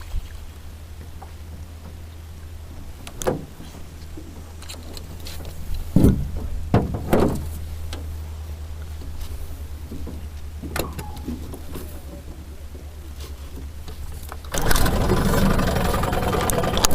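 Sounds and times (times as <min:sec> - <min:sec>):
steady low hum: 0:00.0 - 0:16.9
hollow knocks and thumps: 0:05.9 - 0:07.5.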